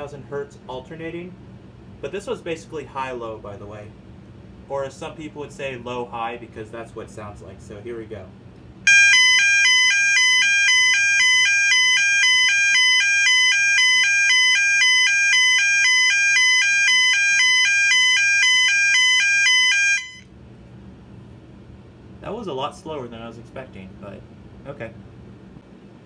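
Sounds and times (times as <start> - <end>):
fire alarm horn high-low tone: 8.9 - 20.2.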